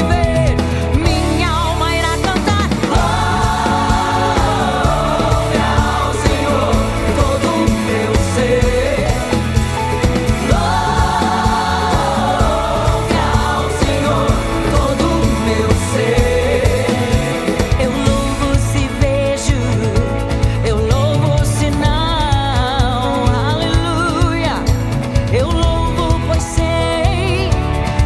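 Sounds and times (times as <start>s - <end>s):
voices singing together: 0.0s - 21.9s
band playing worship song: 0.0s - 28.0s.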